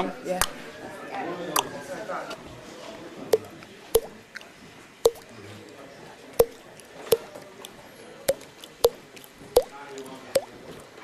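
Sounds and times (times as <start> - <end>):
mouth pops with short notes: 3.4 - 4.5, 5.1 - 5.3, 6.4 - 9.8, 10.4 - 10.6.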